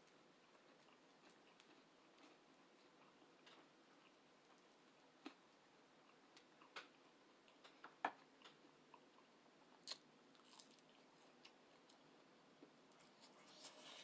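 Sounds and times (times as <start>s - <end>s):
person chewing: 0.0s - 14.0s.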